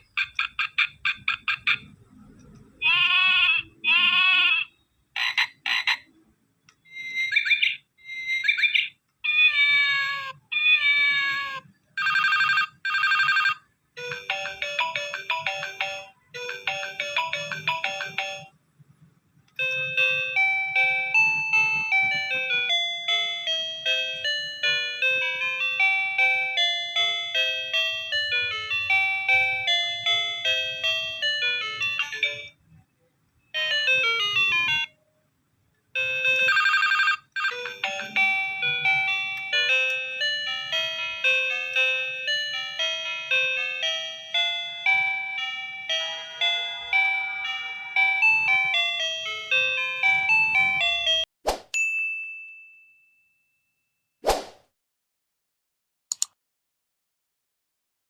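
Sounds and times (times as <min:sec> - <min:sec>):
toy phone sound effects: 0:00.0 - 0:02.0, 0:02.8 - 0:06.2, 0:06.8 - 0:18.6, 0:19.6 - 0:32.6, 0:33.6 - 0:35.0, 0:36.0 - 0:51.3
beeping tune: 0:06.8 - 0:08.6, 0:14.0 - 0:18.5, 0:19.6 - 0:32.5, 0:37.4 - 0:51.2.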